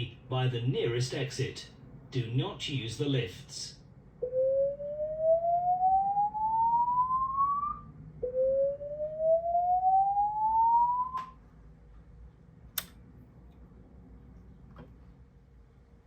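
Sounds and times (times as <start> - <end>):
rising whoop alarm tone: 4.2 - 11.4
sharp click: 12.7 - 13.0.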